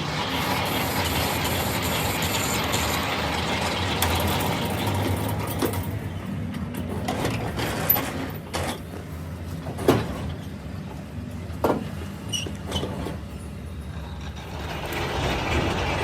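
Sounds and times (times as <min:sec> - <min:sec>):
hiss: 0:00.0 - 0:03.8
workshop machinery humming: 0:00.0 - 0:16.0.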